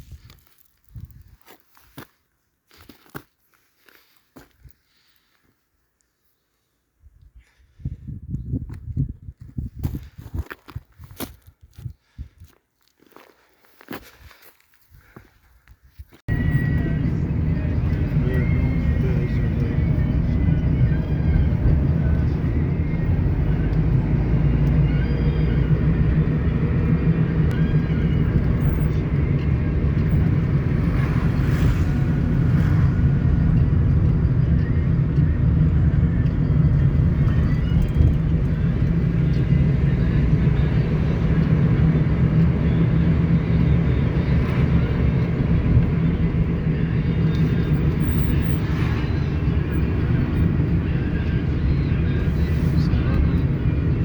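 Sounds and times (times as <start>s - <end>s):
vehicle rumble on the move: 16.3s - 54.0s.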